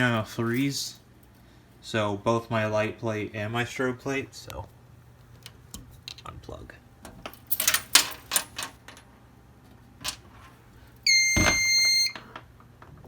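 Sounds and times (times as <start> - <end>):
high electronic beep: 11.1 - 12.2.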